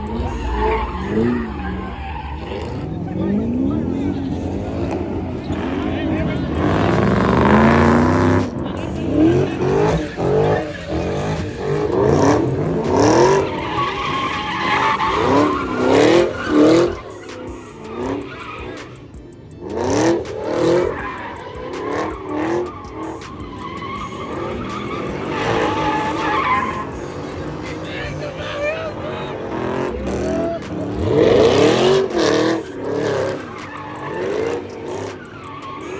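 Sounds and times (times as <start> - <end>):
car engine revving: 0.0 - 35.9
tires squealing: 0.0 - 35.9.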